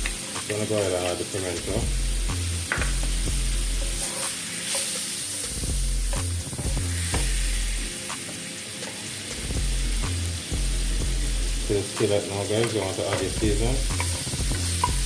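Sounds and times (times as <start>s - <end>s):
background music with bass line: 0.0s - 15.0s
food sizzling in butter: 0.0s - 15.0s
spoon clicking and scraping: 14.0s - 15.0s.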